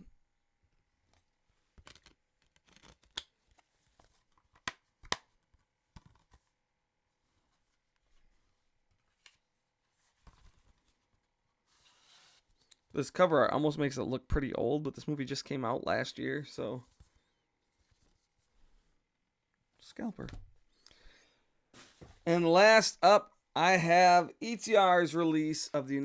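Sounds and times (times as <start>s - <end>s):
faint rustling of slipcover: 16.8s - 19.0s, 21.7s - 22.3s.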